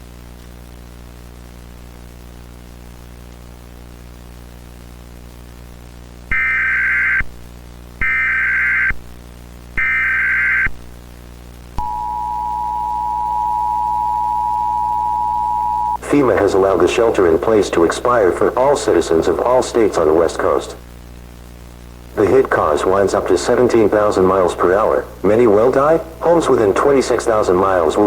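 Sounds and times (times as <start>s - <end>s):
low background hum: 10.8s - 28.0s
two-tone alert signal: 11.8s - 16.0s
data header tone bursts: 11.8s - 20.4s.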